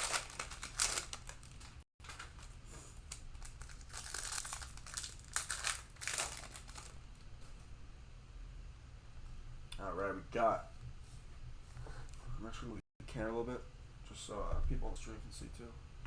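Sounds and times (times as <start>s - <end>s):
cellophane crinkling and tearing: 0.0s - 7.0s.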